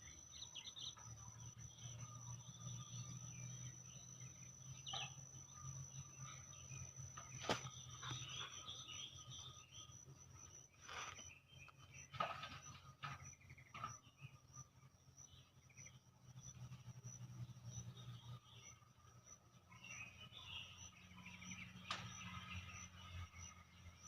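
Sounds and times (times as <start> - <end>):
high-pitched insect drone: 0.0 - 11.3
birds chirping: 0.0 - 24.0.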